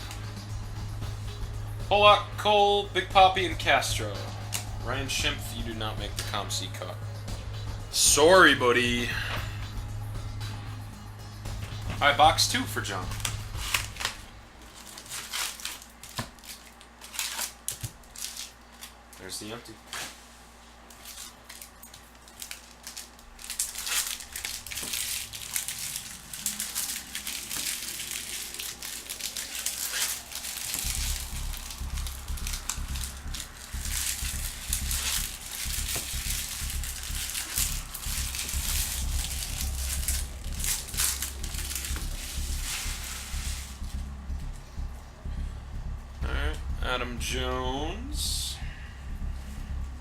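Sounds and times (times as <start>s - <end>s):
plastic wrappers crinkling and tearing: 3.2s - 6.8s, 11.6s - 44.1s.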